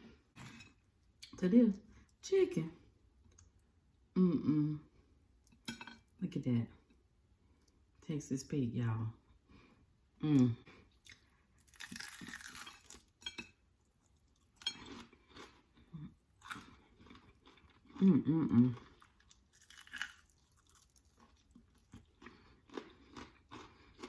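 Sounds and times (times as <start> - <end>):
person humming: 4.2 - 4.9, 10.2 - 10.6
crunching and chewing chicken: 10.9 - 24.0.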